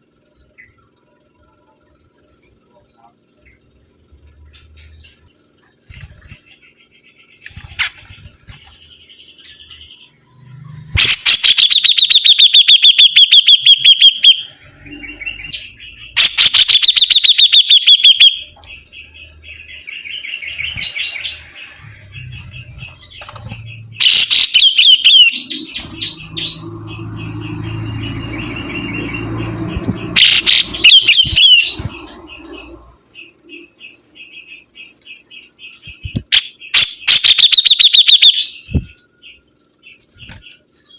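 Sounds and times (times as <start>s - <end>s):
soft bird chirps: 0.0s - 40.9s
songbird rapid trills: 4.5s - 10.0s
low hum: 14.1s - 36.3s.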